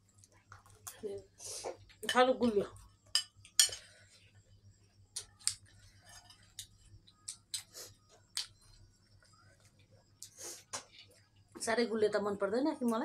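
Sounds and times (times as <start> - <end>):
chewing with crisp crunches: 5.1 - 11.2.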